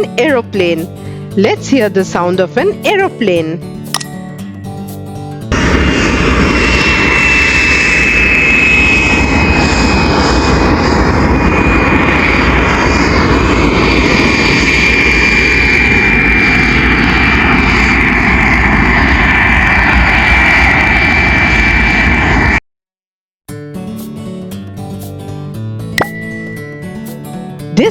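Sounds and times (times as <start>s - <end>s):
jet engines running: 5.4s - 22.6s.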